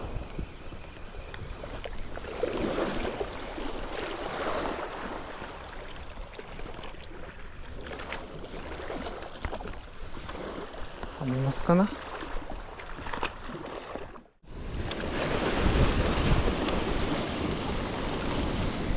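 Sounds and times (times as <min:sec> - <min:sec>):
wind on microphone: 0:00.0 - 0:11.2, 0:14.4 - 0:18.9
waves washing on shore: 0:02.0 - 0:18.9.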